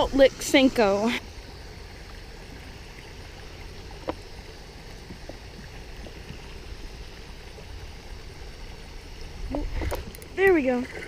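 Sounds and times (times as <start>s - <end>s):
wind rumbling on microphone: 0.0s - 11.0s
faint ticks: 3.9s - 4.3s.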